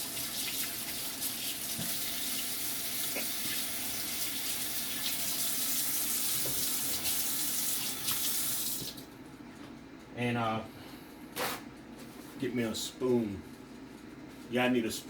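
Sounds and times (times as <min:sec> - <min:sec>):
faucet running into sink: 0:00.0 - 0:09.0.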